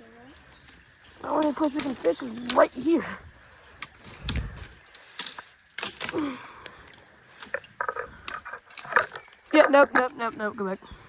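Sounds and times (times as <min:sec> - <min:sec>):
footsteps crunching through dry brush: 0:00.0 - 0:06.1.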